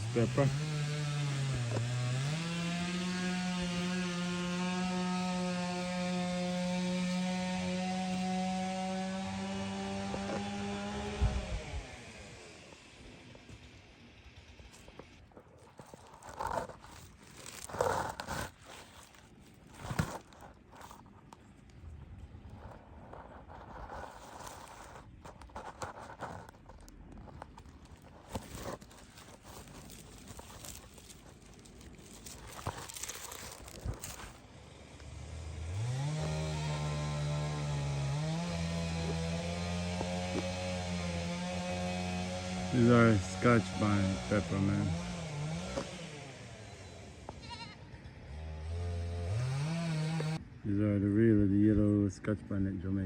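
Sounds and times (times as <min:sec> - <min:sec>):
small engine revving: 0:00.0 - 0:21.0, 0:27.3 - 0:50.4
leaves and stems rustling and snapping: 0:14.6 - 0:35.1, 0:35.8 - 0:46.0.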